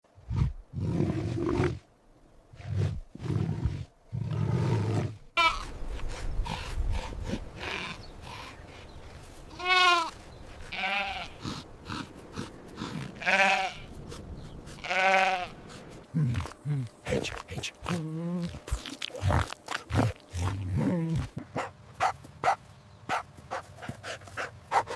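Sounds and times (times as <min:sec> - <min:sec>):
sheep bleating: 0:09.5 - 0:12.0, 0:12.8 - 0:13.9, 0:14.8 - 0:15.6.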